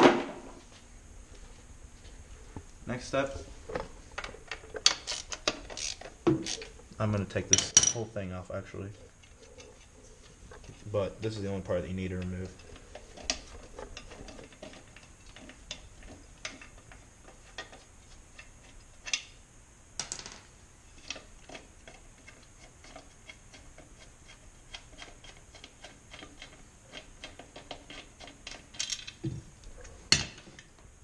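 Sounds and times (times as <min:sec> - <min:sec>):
metal parts knocking: 0:07.3 - 0:08.0.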